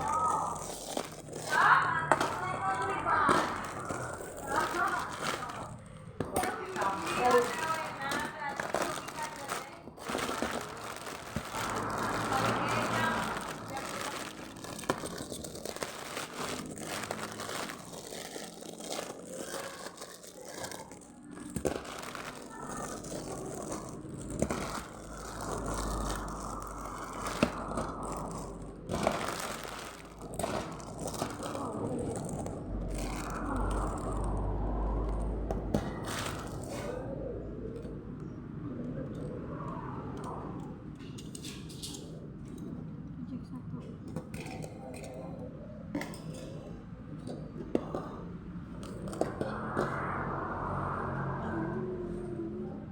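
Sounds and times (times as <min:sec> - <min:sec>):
plastic packaging crinkling: 0:00.0 - 0:34.5, 0:35.8 - 0:36.9.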